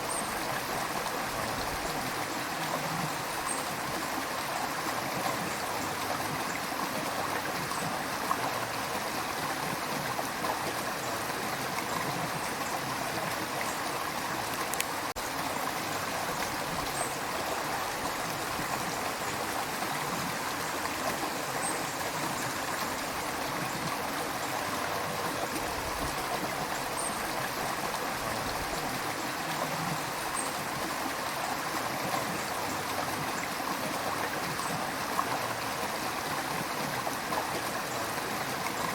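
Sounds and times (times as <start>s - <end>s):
river water flowing over rocks: 0.0s - 38.9s.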